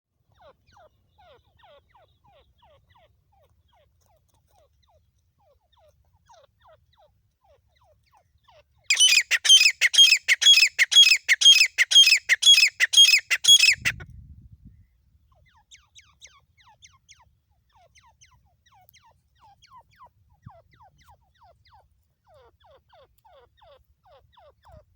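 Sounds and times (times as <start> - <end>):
francolin calling: 8.9 - 14.0
shrill rapid repeated bird calls: 8.9 - 14.0.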